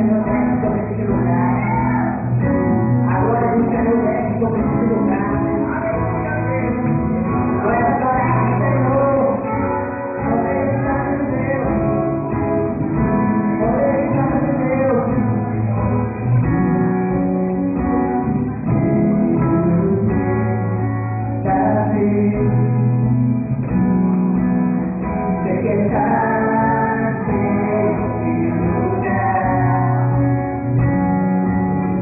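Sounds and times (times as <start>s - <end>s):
person singing: 0.0s - 23.8s, 25.0s - 31.2s
bass line: 0.0s - 32.0s
guitar: 0.0s - 32.0s.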